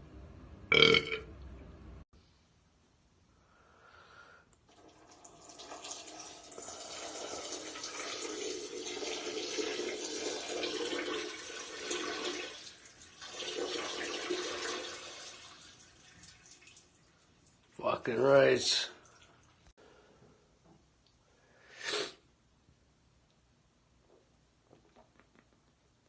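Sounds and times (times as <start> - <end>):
urine stream splashing into toilet: 4.7 - 19.7.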